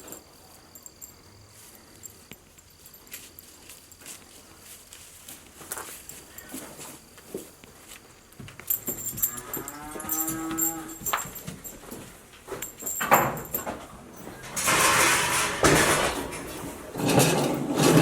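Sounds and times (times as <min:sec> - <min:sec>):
shuffling noise: 0:01.5 - 0:09.0
cow mooing: 0:09.3 - 0:11.0.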